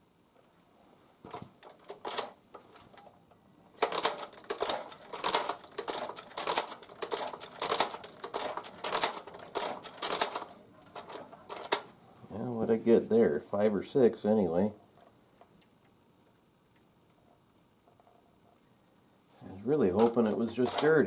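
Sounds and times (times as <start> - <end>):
stitching machine clacking: 1.3 - 2.4, 3.8 - 11.9, 19.9 - 21.0.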